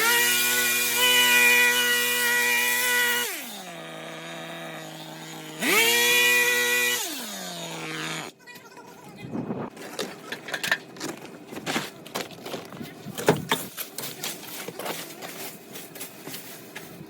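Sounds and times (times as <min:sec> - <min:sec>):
two-stroke engine revving: 0:00.0 - 0:08.3.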